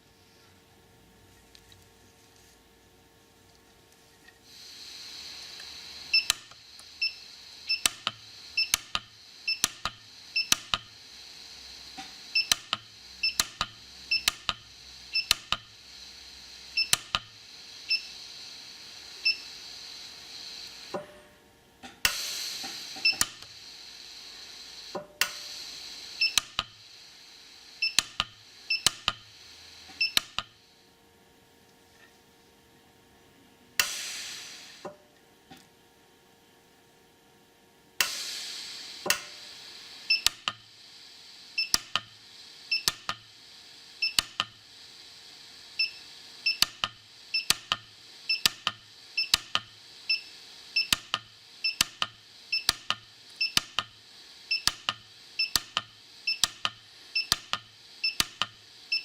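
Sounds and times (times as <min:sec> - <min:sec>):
hiss of shielding gas: 0:04.4 - 0:21.2, 0:22.0 - 0:30.8, 0:33.8 - 0:34.9, 0:38.0 - 0:59.0
welder snapping: 0:21.8 - 0:23.5, 0:39.0 - 0:39.4.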